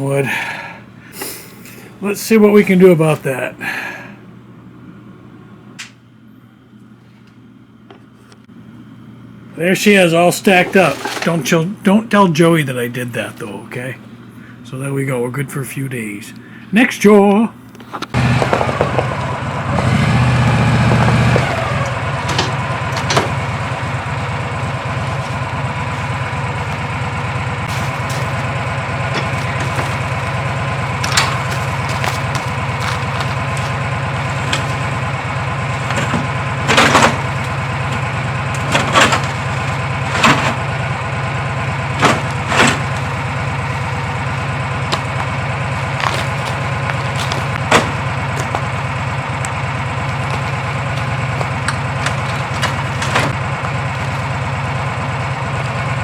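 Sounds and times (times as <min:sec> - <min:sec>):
vehicle engine idling: 0:00.0 - 0:05.6, 0:17.6 - 0:56.0
sharp knocks: 0:42.0 - 0:48.8.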